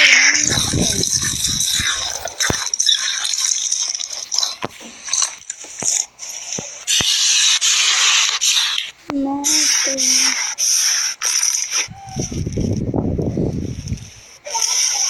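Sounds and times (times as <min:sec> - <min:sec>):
slime squishing: 0:00.0 - 0:14.1
sharp clicking pops: 0:00.5 - 0:03.4.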